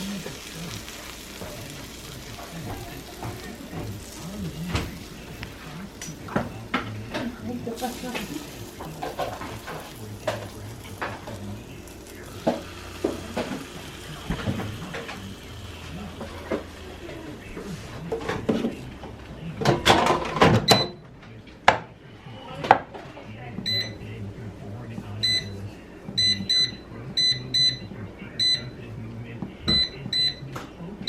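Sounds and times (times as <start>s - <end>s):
dishes and pots clattering: 8.1s - 11.4s, 19.6s - 21.0s.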